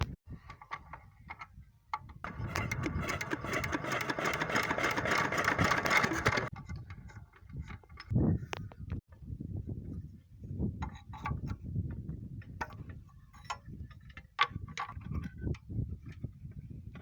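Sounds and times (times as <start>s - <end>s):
engine starter cranking: 2.3s - 6.5s.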